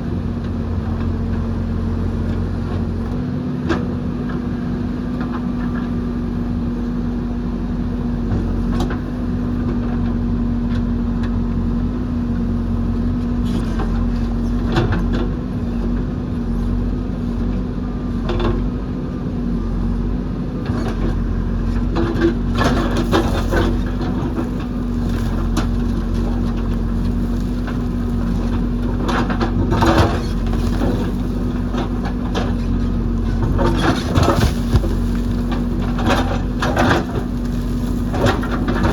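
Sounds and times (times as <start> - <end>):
diesel engine running: 0.0 - 38.9
bucket knocking earth and rock: 23.0 - 38.9.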